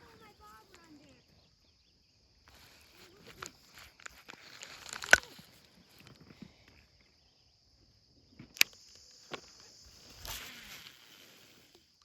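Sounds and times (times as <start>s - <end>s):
rustling handling sounds: 2.5s - 6.6s
sharp clicks: 2.8s - 6.2s, 8.4s - 10.6s.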